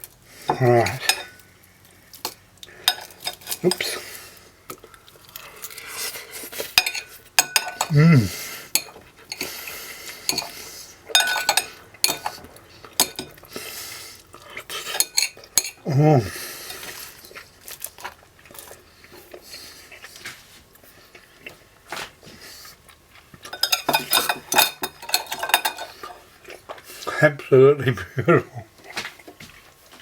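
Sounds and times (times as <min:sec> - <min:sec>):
person humming: 0:00.5 - 0:01.1, 0:07.8 - 0:08.4, 0:15.8 - 0:16.4
cutlery clinking on a plate: 0:00.8 - 0:01.4, 0:02.3 - 0:04.0, 0:06.6 - 0:08.0, 0:08.7 - 0:09.6, 0:10.3 - 0:13.4, 0:14.8 - 0:15.8, 0:23.4 - 0:26.2.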